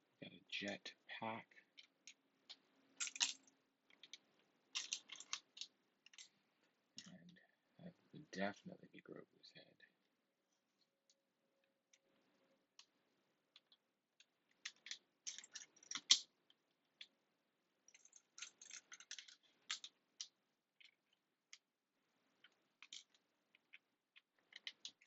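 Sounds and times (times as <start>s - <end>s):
plastic pieces clicking and clattering: 3.0s - 4.2s, 4.8s - 6.3s, 14.5s - 16.2s, 17.9s - 21.6s, 22.4s - 25.0s.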